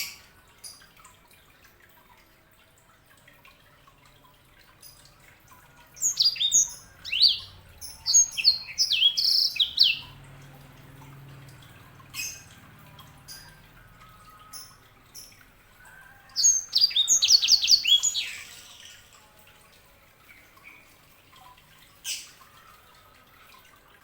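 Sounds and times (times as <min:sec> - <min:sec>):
songbird chirping and whistling: 0:06.0 - 0:10.2, 0:16.0 - 0:19.1.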